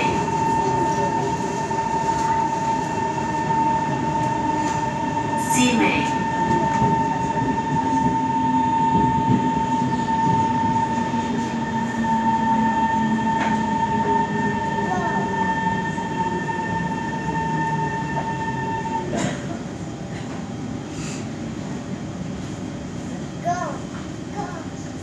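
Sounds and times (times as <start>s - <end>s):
low train hum: 0.0s - 25.0s
metro train motor whine: 0.0s - 25.0s.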